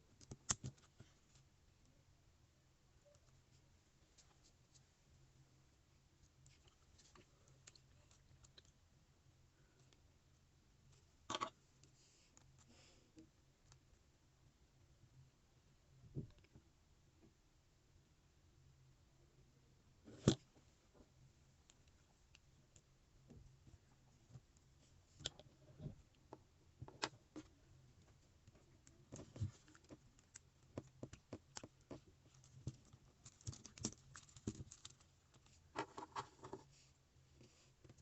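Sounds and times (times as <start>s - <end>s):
plastic parts clicking and rattling: 28.8s - 36.6s.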